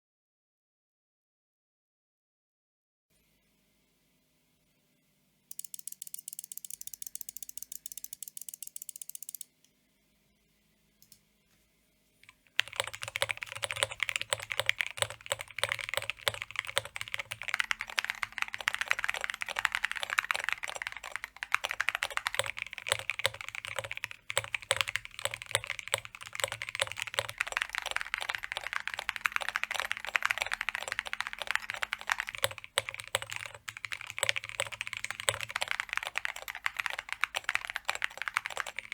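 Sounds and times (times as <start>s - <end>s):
mechanical keyboard typing: 5.5s - 9.5s, 12.2s - 38.9s.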